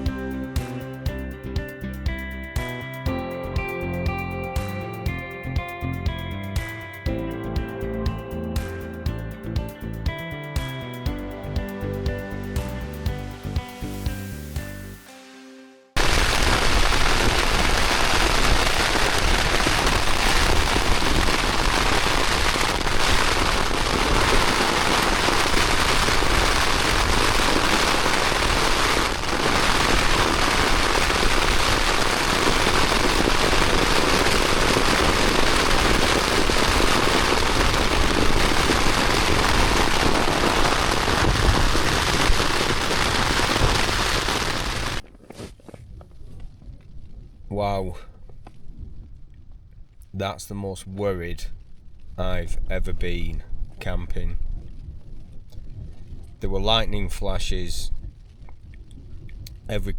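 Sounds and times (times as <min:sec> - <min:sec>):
heavy rain on a tent: 0:16.0 - 0:45.0
strong wind: 0:16.0 - 0:50.1.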